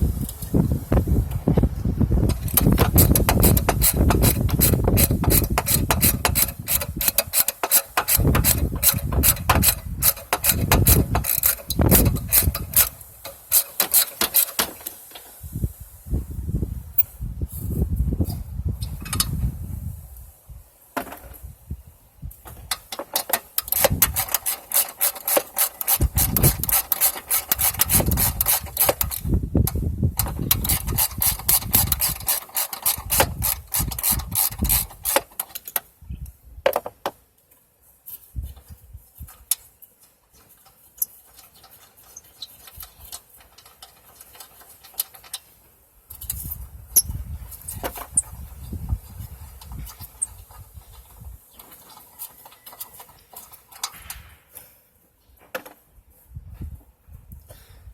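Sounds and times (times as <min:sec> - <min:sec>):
hand ratchet clicking: 0:02.3 - 0:14.8, 0:22.7 - 0:35.8
tool handling and knocking: 0:02.3 - 0:15.0, 0:22.5 - 0:29.3, 0:36.6 - 0:37.2, 0:55.4 - 0:55.8.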